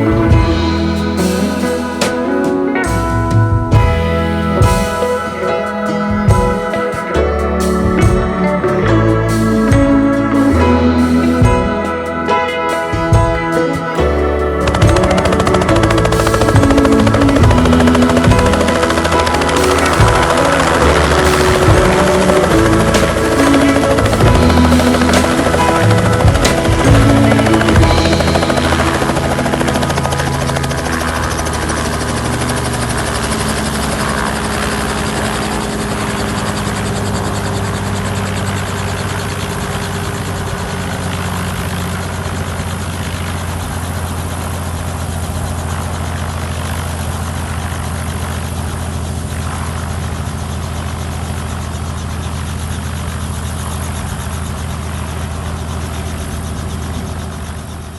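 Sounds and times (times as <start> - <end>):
helicopter engine and rotor: 0.0 - 57.9.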